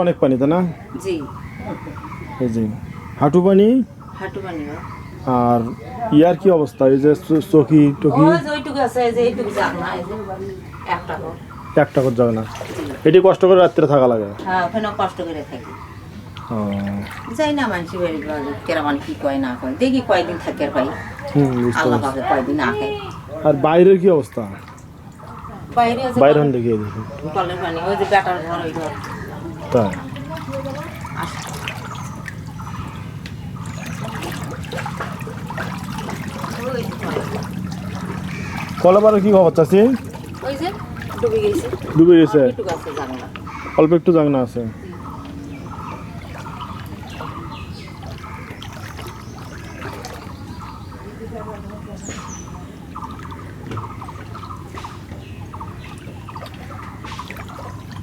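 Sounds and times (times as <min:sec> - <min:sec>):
floodwater sloshing and trickling: 0:00.0 - 0:58.0
small splashes and drips: 0:04.1 - 0:58.0
pulsed animal call: 0:24.3 - 0:58.0.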